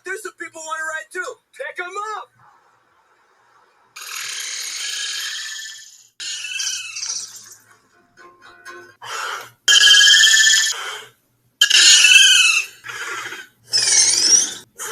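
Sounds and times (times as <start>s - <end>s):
shrill dinosaur squawks: 4.1s - 7.3s, 11.6s - 14.6s.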